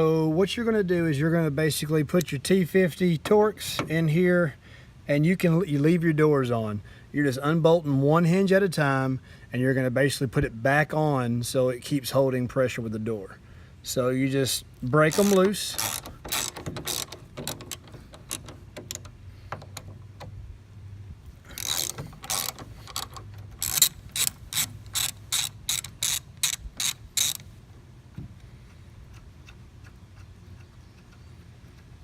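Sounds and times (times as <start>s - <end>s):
hand ratchet clicking: 15.0s - 20.4s, 21.4s - 27.5s.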